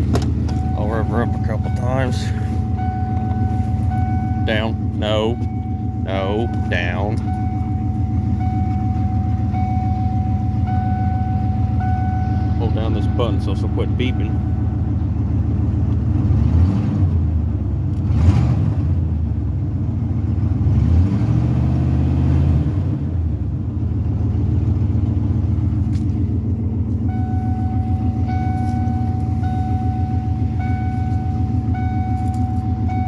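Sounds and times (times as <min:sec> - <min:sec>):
truck engine revving and idling: 0:00.0 - 0:33.0.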